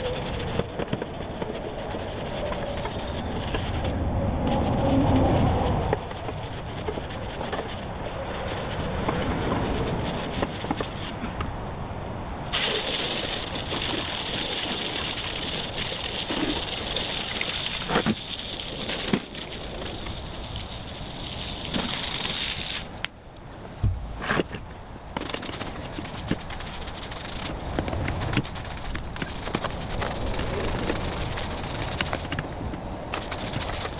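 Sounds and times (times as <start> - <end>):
hose spraying water: 12.5 - 23.0.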